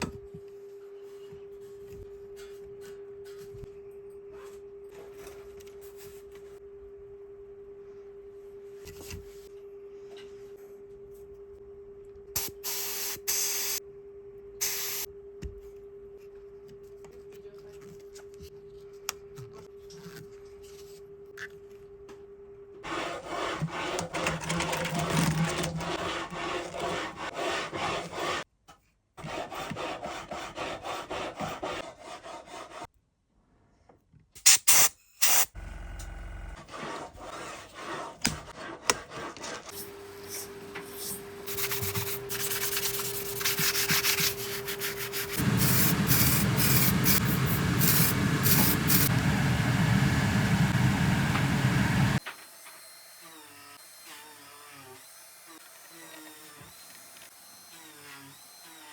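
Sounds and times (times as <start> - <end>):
filing strokes on wood: 22.8 - 28.5, 29.2 - 32.9, 36.6 - 49.1.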